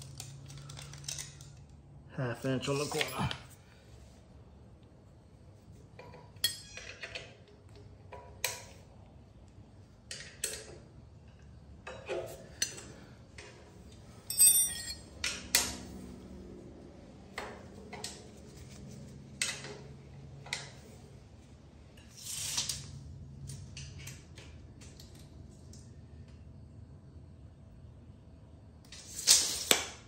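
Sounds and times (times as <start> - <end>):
metal tools clinking: 2.6 - 3.4, 6.3 - 7.2, 14.2 - 15.4.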